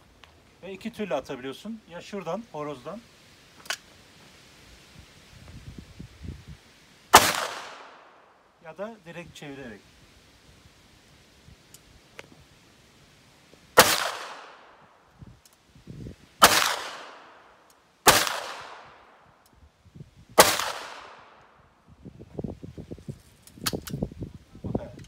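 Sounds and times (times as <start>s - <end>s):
gun handling clicks: 3.6s - 3.9s, 23.4s - 24.0s
shotgun shots with echo: 7.1s - 8.0s, 13.8s - 14.7s, 16.4s - 17.4s, 18.1s - 19.0s, 20.4s - 21.4s.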